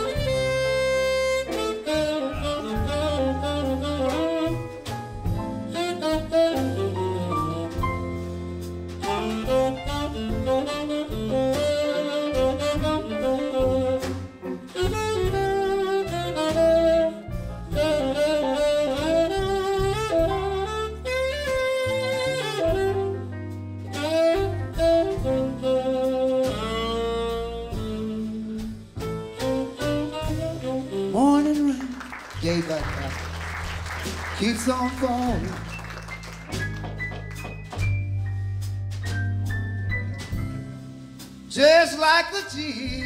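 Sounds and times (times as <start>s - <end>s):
blues band playing: 0.0s - 43.0s
lead instrument solo: 29.6s - 37.8s.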